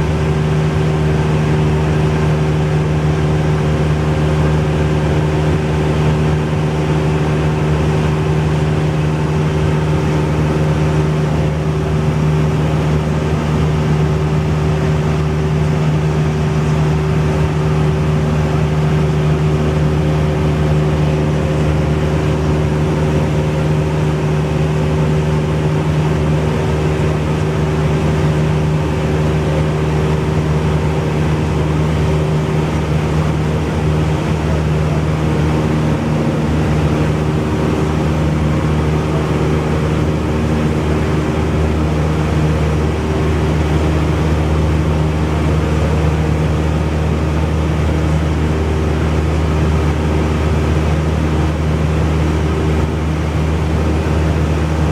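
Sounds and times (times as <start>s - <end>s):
propeller plane engine drone: 0.0s - 54.9s.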